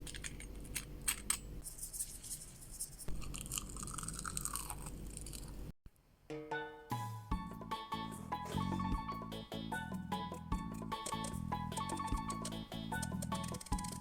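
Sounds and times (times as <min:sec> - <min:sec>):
crunching of crispy snack: 0:03.1 - 0:05.6
background music: 0:06.3 - 0:14.0.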